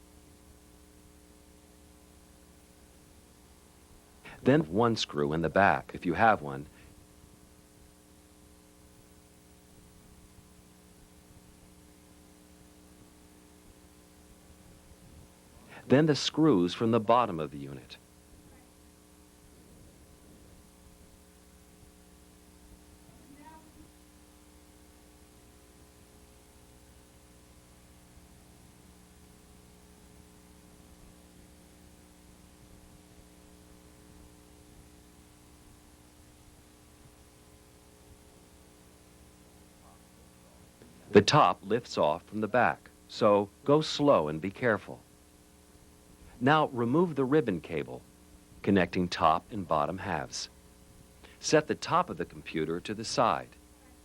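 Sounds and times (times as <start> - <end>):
faint electrical hum: 0.0 - 54.0
steady hiss: 0.0 - 54.0
light hiss: 50.2 - 54.0.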